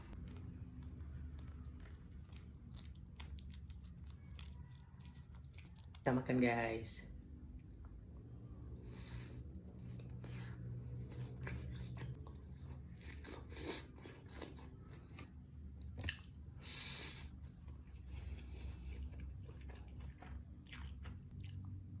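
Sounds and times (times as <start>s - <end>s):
steady low hum: 0.0s - 4.5s
person chewing crunchy food: 0.0s - 6.1s, 8.7s - 22.0s.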